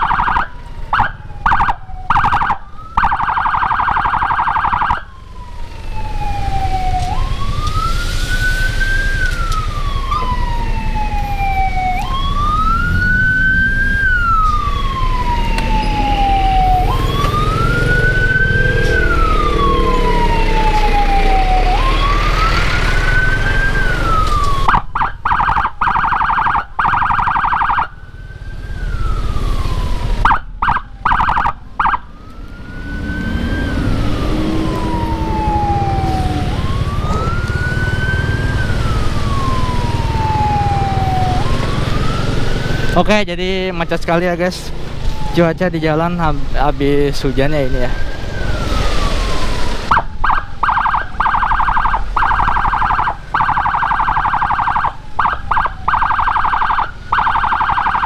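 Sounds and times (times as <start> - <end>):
electronic siren wailing: 0.0 - 58.0
engine and traffic rumble: 0.0 - 58.0
siren fast warble: 0.0 - 58.0.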